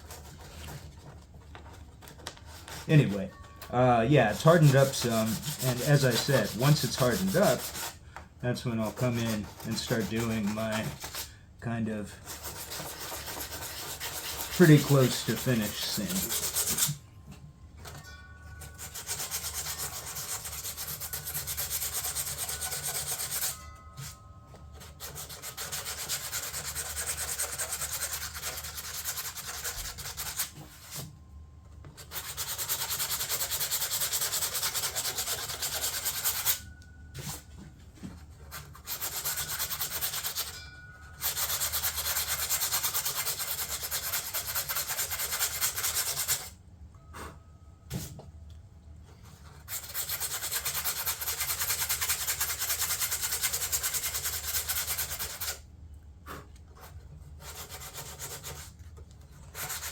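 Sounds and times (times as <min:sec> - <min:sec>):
sanding scratchy rasp: 0:00.0 - 0:01.1, 0:04.3 - 0:08.0, 0:08.6 - 0:11.3, 0:12.2 - 0:17.0, 0:18.6 - 0:24.2, 0:24.8 - 0:31.0, 0:32.0 - 0:36.6, 0:38.4 - 0:46.5, 0:49.3 - 0:55.6, 0:56.8 - 0:58.7, 0:59.4 - 0:59.9.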